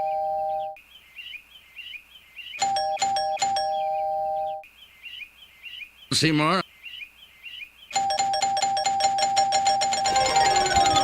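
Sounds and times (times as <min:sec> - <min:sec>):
two-note doorbell chime: 0:08.0 - 0:11.0.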